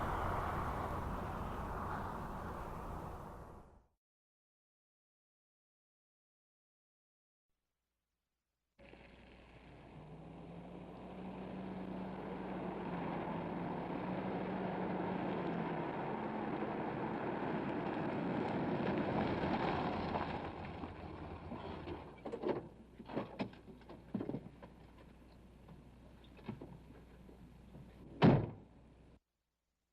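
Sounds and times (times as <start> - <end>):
motor vehicle running: 0.0 - 3.6, 8.8 - 28.0.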